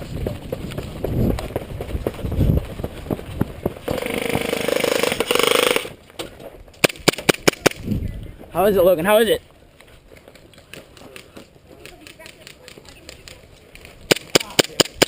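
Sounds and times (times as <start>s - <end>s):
airsoft gun full-auto bursts: 3.9s - 5.9s.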